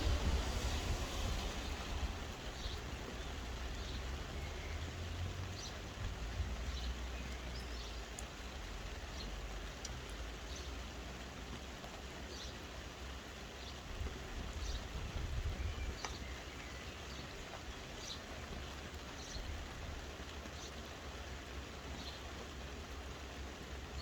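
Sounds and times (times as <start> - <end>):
low rumble: 0.0 - 3.5
soft rain hiss: 0.0 - 24.0.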